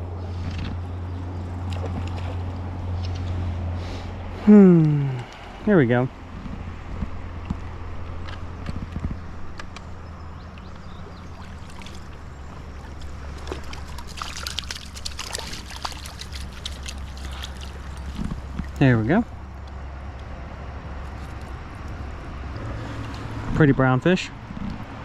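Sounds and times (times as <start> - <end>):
light ticks and small splashes: 1.6 - 3.4, 9.6 - 18.9
wind rumble on microphone: 5.5 - 18.8, 20.2 - 25.0
river water flowing: 9.3 - 20.1.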